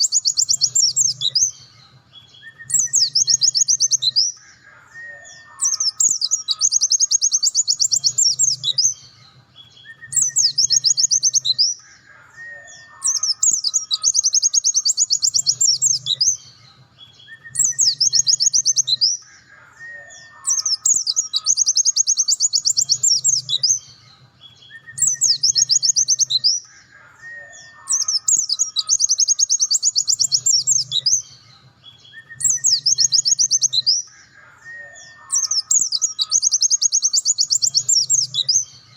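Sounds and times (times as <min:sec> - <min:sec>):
bird fast trilled song: 0:00.0 - 0:38.9.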